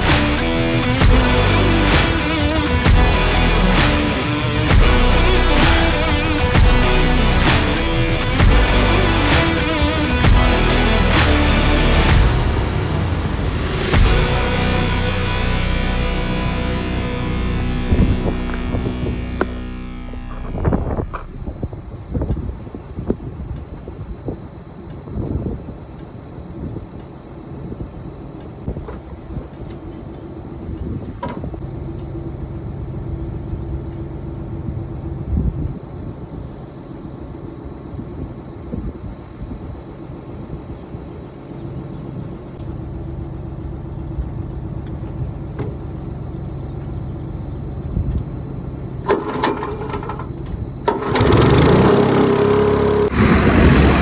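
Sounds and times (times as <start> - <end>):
loud rush of noise: 0.0 - 21.9, 50.9 - 54.0
tractor engine running: 0.0 - 21.9, 49.0 - 54.0.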